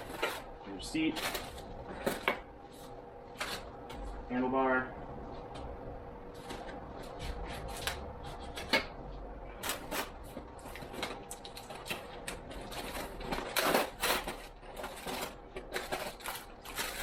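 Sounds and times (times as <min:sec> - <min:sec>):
rustling packaging: 0:00.0 - 0:03.7, 0:09.5 - 0:17.0.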